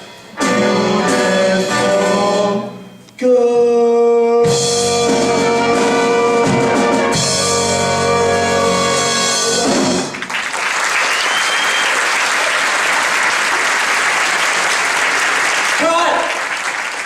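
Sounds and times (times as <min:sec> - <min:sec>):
music with held brass chord: 0:00.3 - 0:03.0, 0:04.6 - 0:10.1
audience applause: 0:10.1 - 0:17.0.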